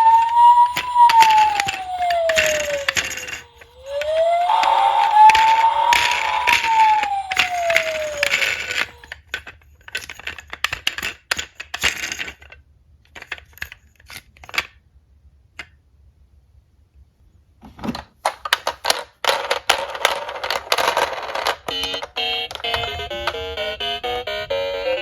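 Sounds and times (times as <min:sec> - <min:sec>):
metal toy cars clattering: 0:06.6 - 0:14.8, 0:17.8 - 0:22.9.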